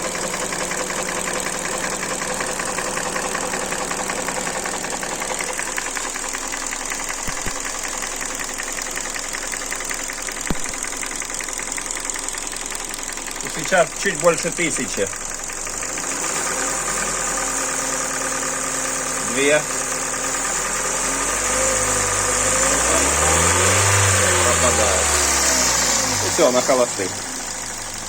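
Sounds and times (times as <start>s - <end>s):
engine running with knock: 0.0s - 28.0s
sharp clicks: 7.3s - 7.8s, 10.5s - 11.2s.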